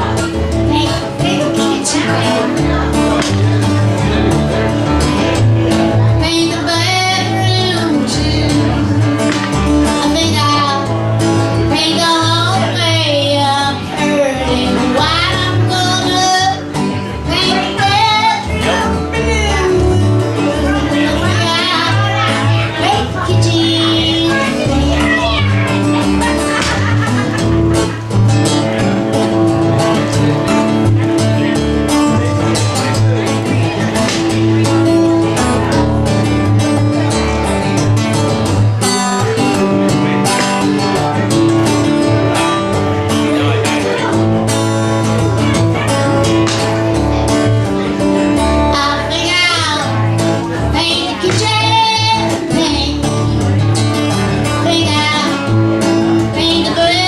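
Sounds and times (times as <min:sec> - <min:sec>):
guitar playing: 0:00.0 - 0:57.0
woman singing with vibrato: 0:06.2 - 0:08.8, 0:10.0 - 0:10.9, 0:11.7 - 0:16.6, 0:17.3 - 0:25.6, 0:50.7 - 0:53.2, 0:54.6 - 0:55.4, 0:56.3 - 0:57.0.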